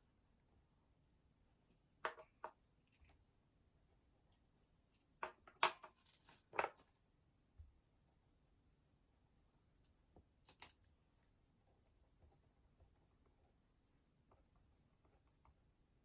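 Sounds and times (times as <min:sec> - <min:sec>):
small objects clicking on desk: 0:05.2 - 0:06.9, 0:10.5 - 0:11.0.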